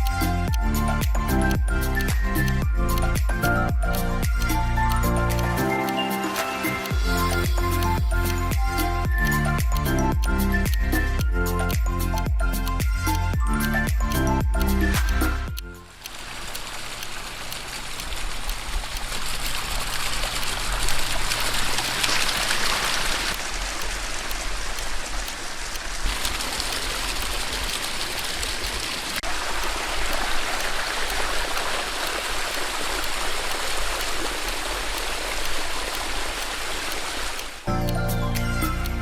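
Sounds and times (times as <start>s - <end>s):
waterfall splashing: 15.9s - 37.7s.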